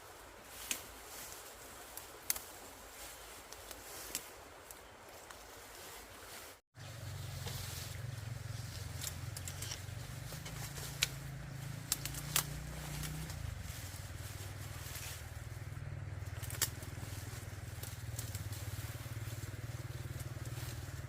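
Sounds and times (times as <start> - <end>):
sharp snaps and crackles: 0.5 - 0.9, 1.9 - 2.7, 3.4 - 5.4, 8.8 - 15.2, 16.2 - 19.3
small engine humming: 6.8 - 21.0.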